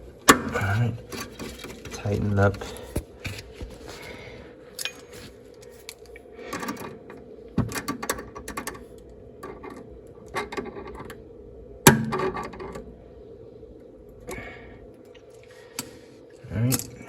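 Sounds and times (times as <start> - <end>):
wrenches clinking on metal fitting: 4.8 - 5.2.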